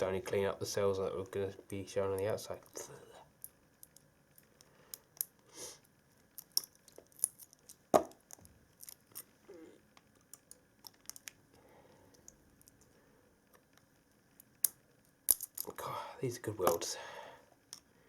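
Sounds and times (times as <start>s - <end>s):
battery tabs snapping and crinkling: 6.2s - 9.3s, 10.0s - 11.5s, 13.5s - 15.8s.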